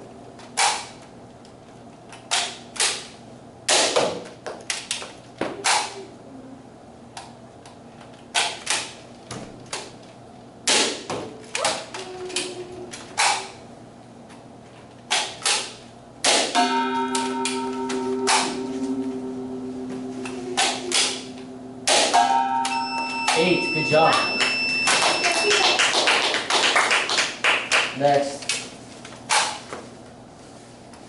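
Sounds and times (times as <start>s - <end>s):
ringing tone: 16.6s - 25.6s.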